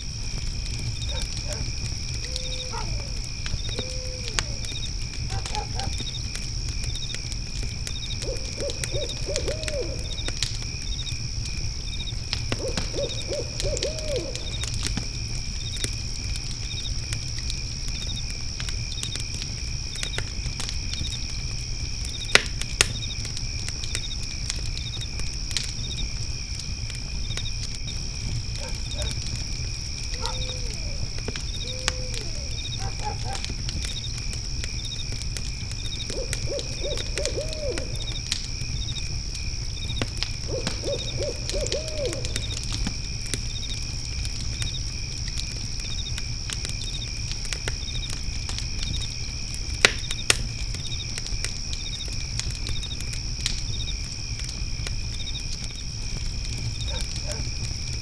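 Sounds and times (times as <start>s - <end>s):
crickets chirping: 0.0s - 58.0s
fire crackling and popping: 0.0s - 58.0s
owl hooting: 2.3s - 3.1s, 3.7s - 4.6s, 8.2s - 10.2s, 12.6s - 14.6s, 30.2s - 33.4s, 36.1s - 38.1s, 40.5s - 42.6s.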